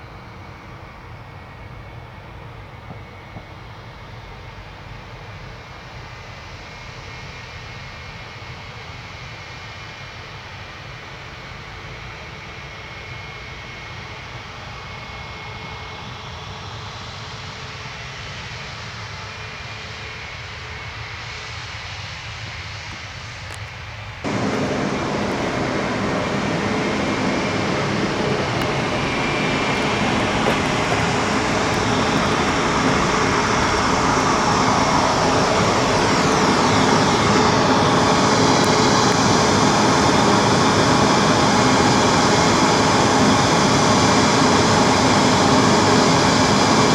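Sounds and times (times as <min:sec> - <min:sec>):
airliner engines rushing: 0:23.3 - 0:46.9.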